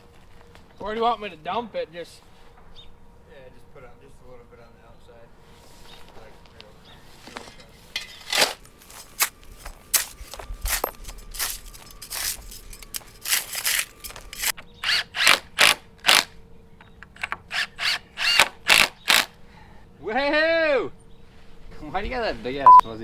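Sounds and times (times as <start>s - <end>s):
tools scraping wet concrete: 7.7s - 14.5s.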